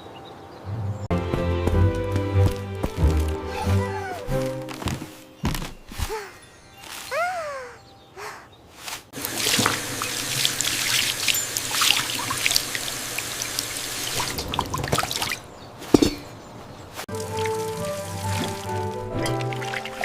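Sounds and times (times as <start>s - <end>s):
music: 0.8s - 7.2s, 17.1s - 20.0s
water pouring and trickling: 9.2s - 16.1s, 17.1s - 20.0s.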